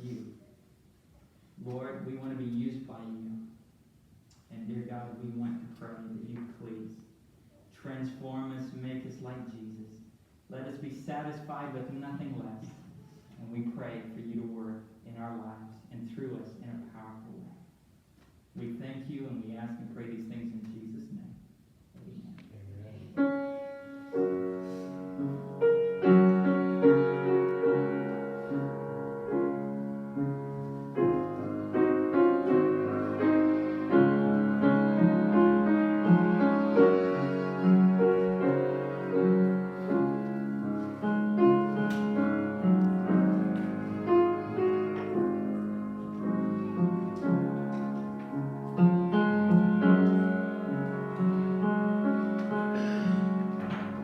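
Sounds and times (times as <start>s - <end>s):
piano slow chords: 22.9s - 54.0s.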